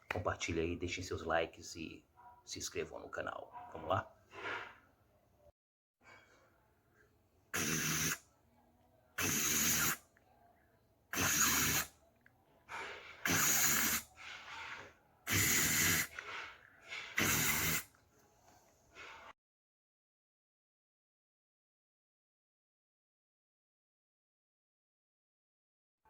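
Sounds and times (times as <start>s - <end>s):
rushing spray-like mouth noise: 7.5s - 8.2s, 9.2s - 10.0s, 11.1s - 11.9s, 12.7s - 18.0s
soft breathy mouth sounds: 7.6s - 8.2s, 9.2s - 10.3s, 11.1s - 19.3s.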